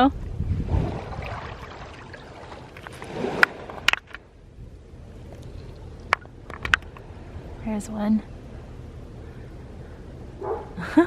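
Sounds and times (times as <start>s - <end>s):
seawater lapping among rocks: 0.6s - 4.3s
stones clicking and knocking: 5.4s - 7.0s.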